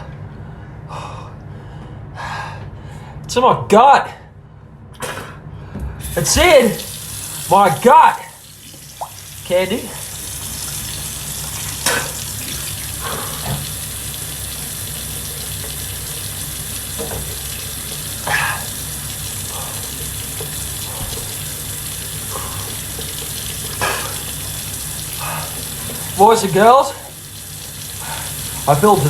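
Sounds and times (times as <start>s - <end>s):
water running from tap: 6.0s - 29.0s.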